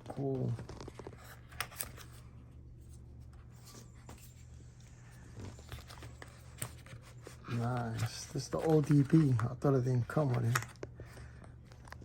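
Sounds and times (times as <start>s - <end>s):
steady low hum: 0.0s - 12.0s
packaging rustling: 5.2s - 11.0s.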